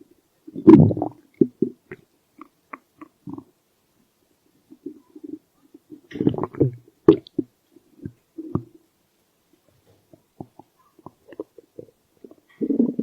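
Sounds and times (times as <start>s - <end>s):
stomach growling: 0.5s - 3.5s, 4.7s - 8.8s, 10.0s - 13.0s.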